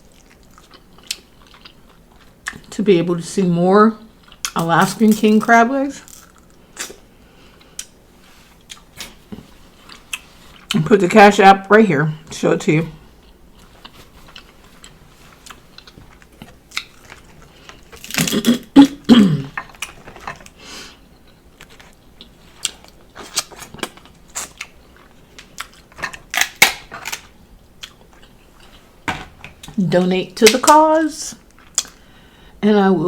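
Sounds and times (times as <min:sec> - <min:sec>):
person chewing: 0:00.0 - 0:02.7, 0:04.2 - 0:04.6, 0:06.1 - 0:10.8, 0:13.0 - 0:29.0, 0:31.4 - 0:32.1
crab shell cracking: 0:25.4 - 0:27.3.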